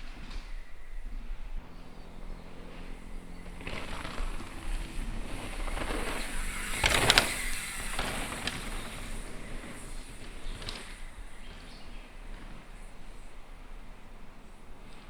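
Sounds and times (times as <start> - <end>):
bike rattling: 0.0 - 15.0
bike tyres on dirt: 0.0 - 15.0.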